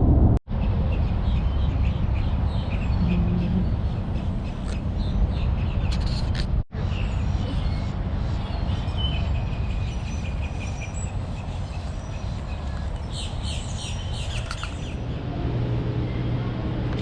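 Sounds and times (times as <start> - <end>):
low rumble: 0.0 - 0.4
small birds chirping: 6.8 - 15.3.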